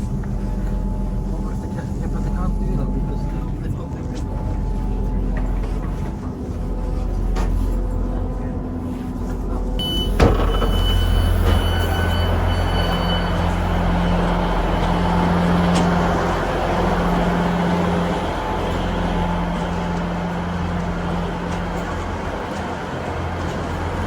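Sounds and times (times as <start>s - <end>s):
train engine rumble: 0.0s - 24.0s
faint high squeal: 9.8s - 14.7s.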